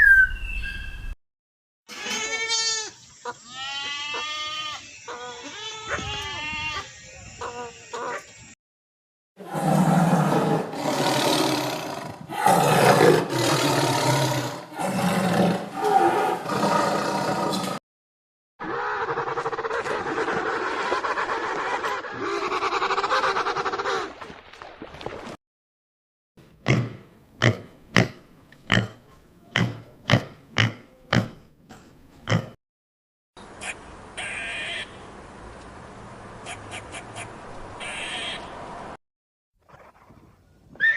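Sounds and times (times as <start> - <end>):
lion roaring: 9.4 - 17.8
pig grunting: 9.4 - 17.8.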